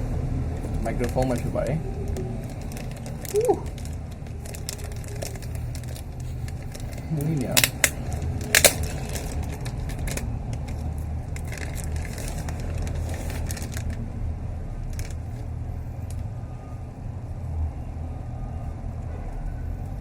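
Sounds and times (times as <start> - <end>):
steady low rumble: 0.0 - 20.0
packaging crinkling and clicking: 0.6 - 14.0, 14.9 - 15.5.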